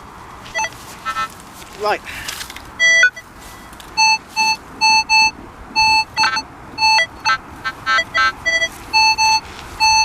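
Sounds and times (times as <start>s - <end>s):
metal detector beeps: 0.5s - 1.3s, 2.8s - 10.0s.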